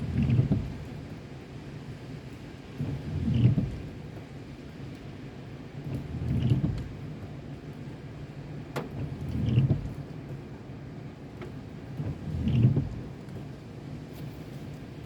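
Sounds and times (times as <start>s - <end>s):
windshield wipers sweeping: 0.0s - 1.0s, 2.8s - 4.0s, 5.8s - 7.3s, 8.6s - 10.5s, 11.2s - 15.0s
car driving in the rain: 0.0s - 15.0s.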